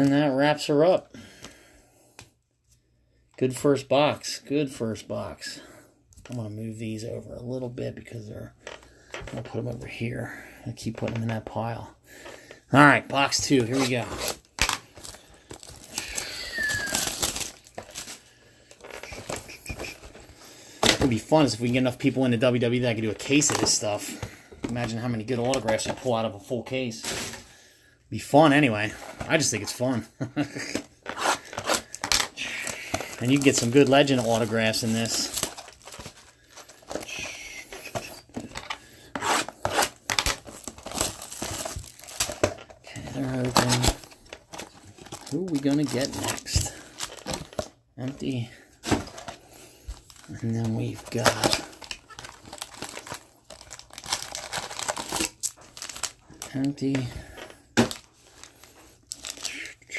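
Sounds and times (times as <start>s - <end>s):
plastic wrap crinkling and tearing: 12.8s - 27.5s, 28.4s - 59.9s.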